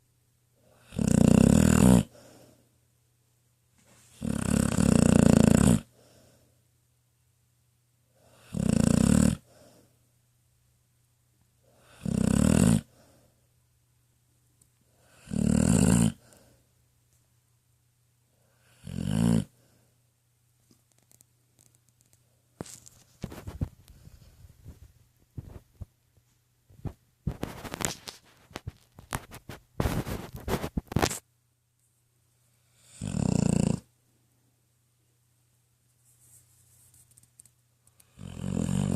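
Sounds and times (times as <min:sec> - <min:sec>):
dog snoring: 0:00.7 - 0:02.4, 0:04.1 - 0:06.2, 0:08.2 - 0:09.8, 0:11.7 - 0:13.2, 0:15.0 - 0:16.5, 0:18.5 - 0:19.6, 0:32.7 - 0:33.9, 0:38.0 - 0:38.9.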